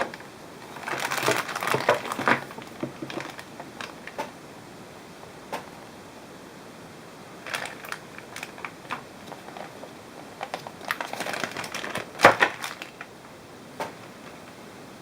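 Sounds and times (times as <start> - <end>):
small hard parts clicking and rattling: 0.0 - 4.2, 7.4 - 9.7, 10.4 - 13.1.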